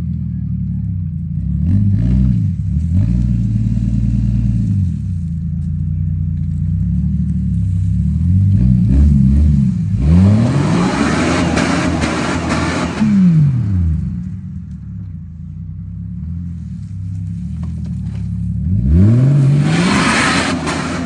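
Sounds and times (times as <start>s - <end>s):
car engine idling and revving: 0.0s - 21.0s.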